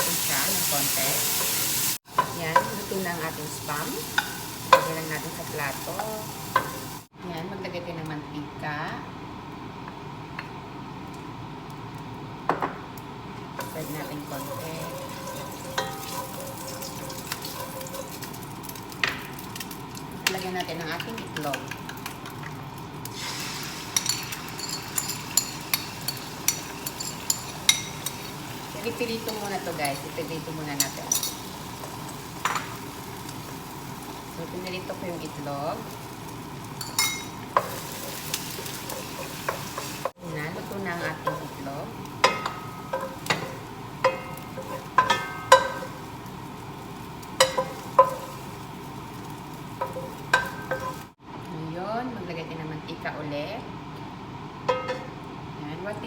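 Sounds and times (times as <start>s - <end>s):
eggs sizzling in oil: 0.0s - 7.2s, 10.5s - 51.2s
spatula clinking against pan: 42.2s - 45.9s.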